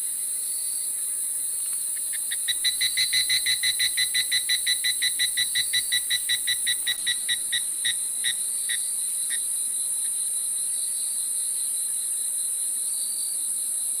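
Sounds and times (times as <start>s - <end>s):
insect chorus trilling: 0.0s - 14.0s
fast pitched chirps: 2.2s - 8.0s.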